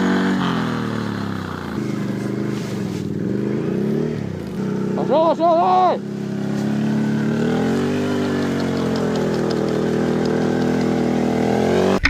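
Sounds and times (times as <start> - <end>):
vehicle engine running under load: 0.0 - 12.0.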